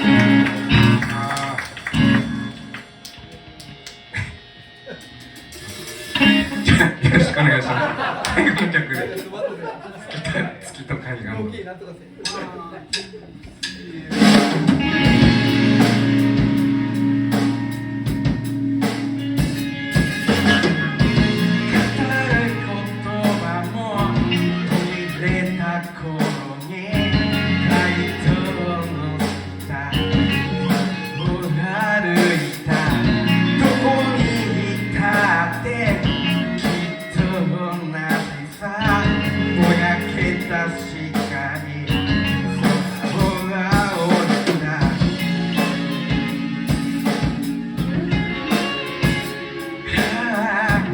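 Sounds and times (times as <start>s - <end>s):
person singing: 0.0s - 3.5s, 20.2s - 50.9s
electric guitar: 0.0s - 9.2s, 14.0s - 50.9s
bass: 0.0s - 9.4s, 10.2s - 50.9s
drum kit: 0.0s - 9.4s, 12.2s - 50.9s.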